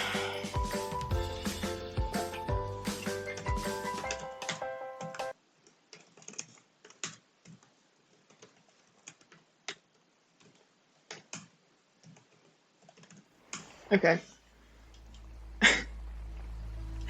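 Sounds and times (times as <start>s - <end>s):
fantasy background music: 0.0s - 5.3s
keyboard and mouse clicks: 3.3s - 13.7s.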